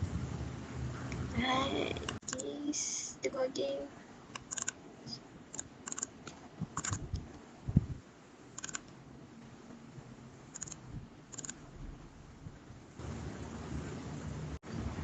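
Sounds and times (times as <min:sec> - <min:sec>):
mouse and keyboard clicks: 0:04.3 - 0:04.8, 0:05.5 - 0:06.1, 0:06.8 - 0:07.0, 0:08.6 - 0:08.9, 0:10.6 - 0:11.6.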